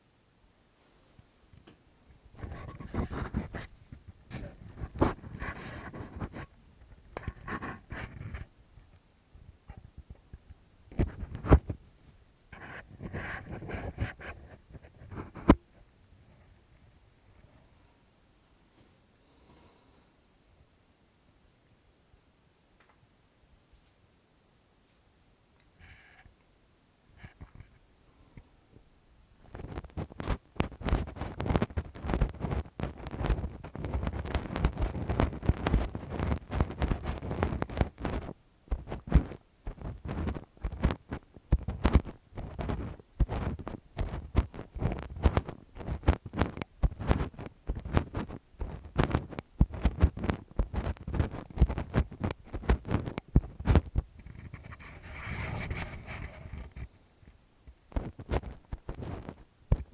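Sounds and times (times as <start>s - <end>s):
fingers scratching on microphone: 2.3s - 9.0s, 9.7s - 16.6s, 25.8s - 26.3s, 27.2s - 27.8s, 29.4s - 59.9s.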